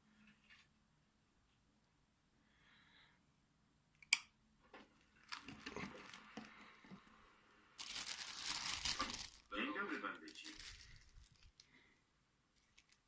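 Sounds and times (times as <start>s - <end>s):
small clicks and rustling: 12.6s - 13.0s.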